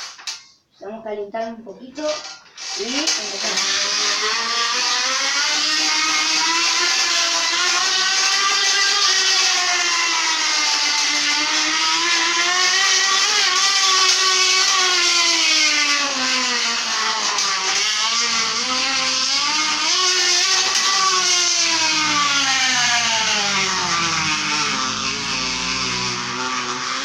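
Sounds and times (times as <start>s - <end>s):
card buzzing on bicycle tyre: 2.6s - 27.0s.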